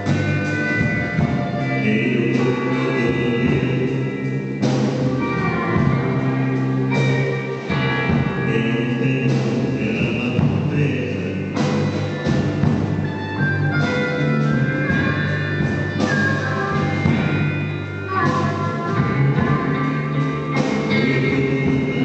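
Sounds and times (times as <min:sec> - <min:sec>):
blues band playing: 0:00.0 - 0:22.0
steady low bass line: 0:00.0 - 0:22.0.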